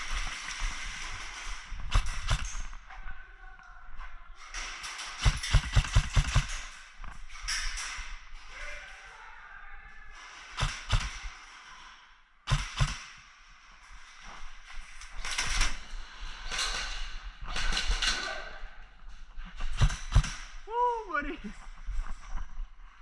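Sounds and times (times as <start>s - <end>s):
rustling and clatter: 0.0s - 3.2s, 3.9s - 9.1s, 10.0s - 20.7s, 21.3s - 23.0s
sharp knocks: 5.2s - 6.6s.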